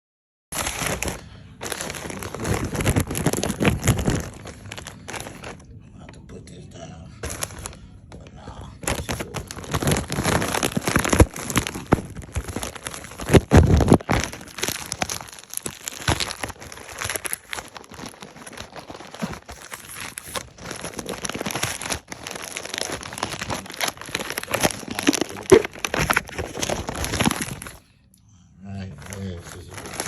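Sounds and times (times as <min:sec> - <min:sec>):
packaging crinkling and tearing: 0:00.6 - 0:05.7, 0:07.2 - 0:27.8, 0:29.0 - 0:30.0.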